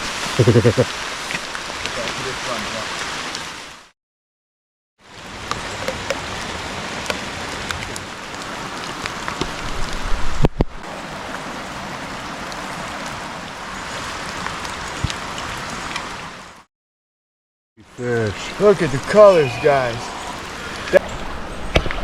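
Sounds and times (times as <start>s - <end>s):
heavy rain falling: 0.0s - 3.9s, 5.0s - 16.7s, 17.9s - 22.0s.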